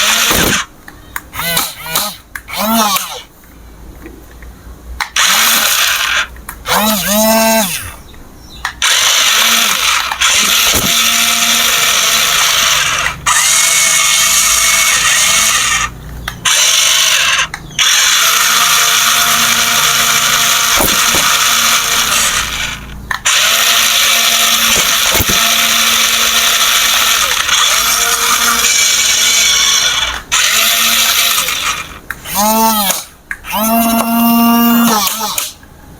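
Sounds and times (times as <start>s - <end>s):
toy electric motor whirring: 0.0s - 3.3s, 5.0s - 8.0s, 8.6s - 35.6s.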